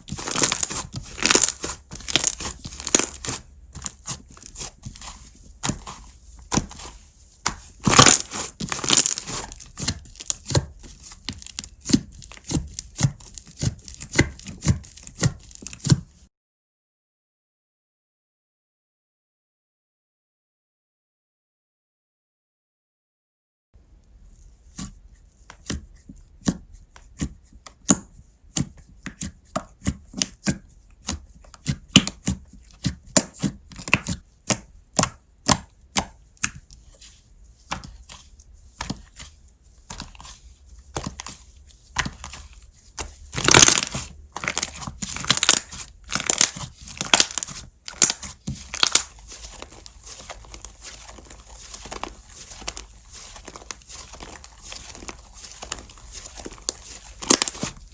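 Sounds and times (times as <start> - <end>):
crackly slime squishes: 0.0 - 16.2, 24.2 - 57.9.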